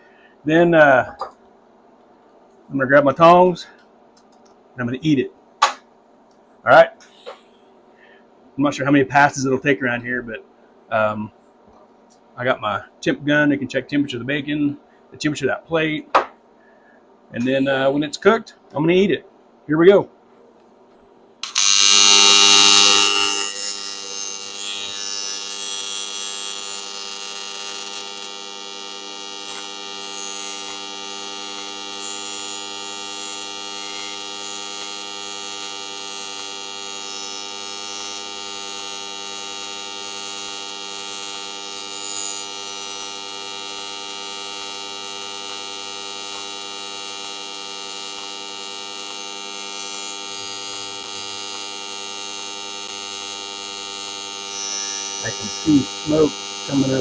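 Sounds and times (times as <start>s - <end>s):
welding arc buzzing: 7.0s - 8.1s, 17.4s - 18.4s, 21.2s - 57.0s.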